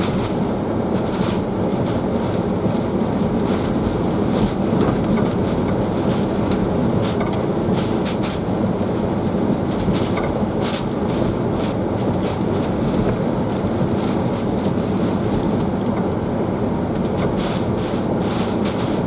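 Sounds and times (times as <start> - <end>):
wind roaring around a car: 0.0 - 19.0.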